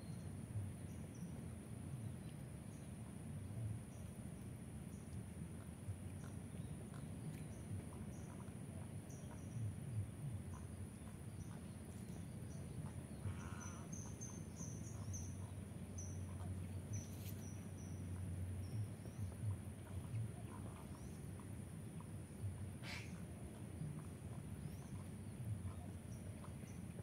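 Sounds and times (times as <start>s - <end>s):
insect drone: 0.0s - 27.0s
animal call: 13.2s - 14.0s.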